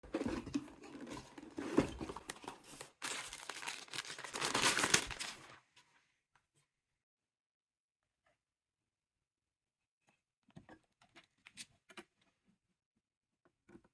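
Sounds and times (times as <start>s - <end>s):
packaging crinkling and rustling: 0.2s - 5.6s.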